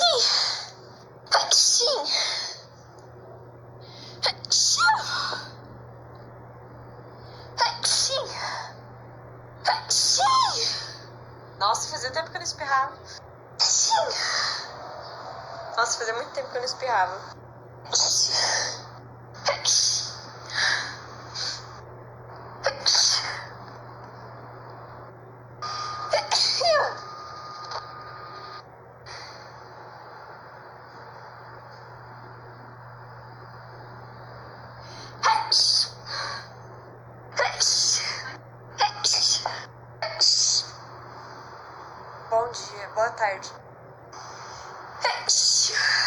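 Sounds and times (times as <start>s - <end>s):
breathy bursts: 19.7s - 23.7s, 28.2s - 30.2s, 44.1s - 45.0s.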